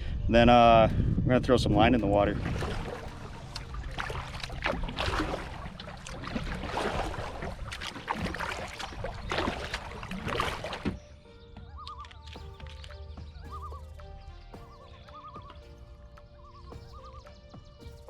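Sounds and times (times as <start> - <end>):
paddle strokes splashing in water: 2.3 - 13.9
water dripping off paddle: 2.3 - 18.0.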